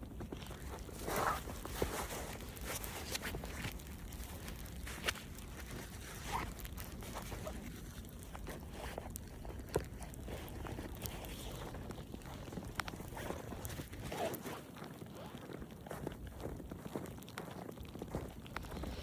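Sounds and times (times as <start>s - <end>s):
footsteps crunching in snow: 12.5s - 19.0s
steady low rumble: 18.4s - 19.0s.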